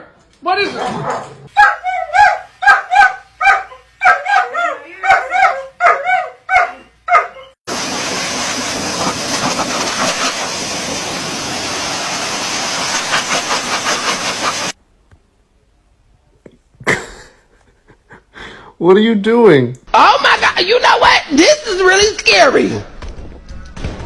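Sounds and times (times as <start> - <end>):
dog yipping and barking: 0.8 - 7.6
loud even hiss: 7.7 - 14.8.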